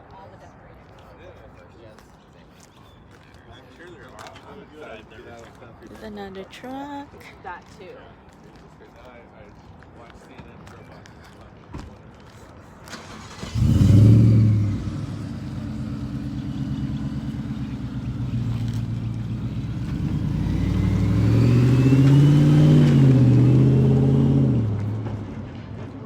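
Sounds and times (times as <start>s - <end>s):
truck engine starting and idling: 12.8s - 25.8s
truck engine revving: 12.9s - 25.6s.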